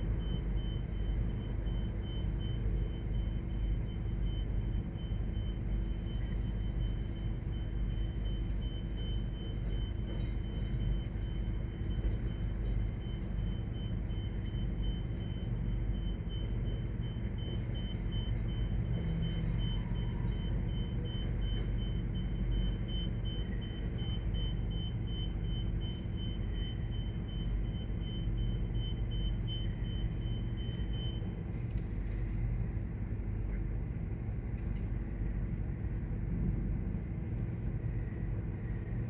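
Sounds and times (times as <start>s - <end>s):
vehicle engine rumble: 0.0s - 39.0s.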